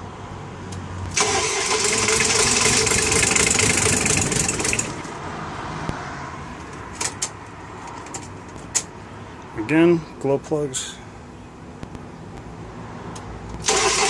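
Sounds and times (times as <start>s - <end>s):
starter cranking diesel engine: 1.1s - 5.0s, 13.6s - 14.0s.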